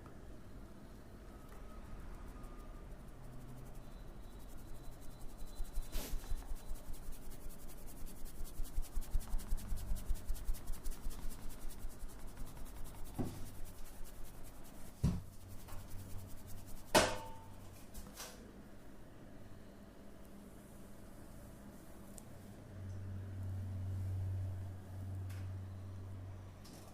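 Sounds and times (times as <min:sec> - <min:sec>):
palms rubbing and patting skin: 0:02.1 - 0:17.0.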